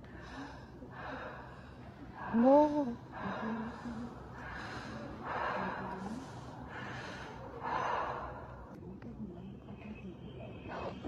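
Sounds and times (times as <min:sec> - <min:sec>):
heavy rasping breaths: 0:00.0 - 0:08.8.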